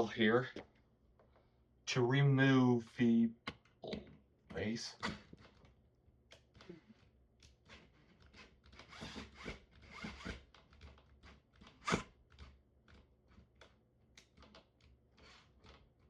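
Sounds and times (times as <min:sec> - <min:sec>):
hand driver scraping and clicking: 0:06.3 - 0:16.0.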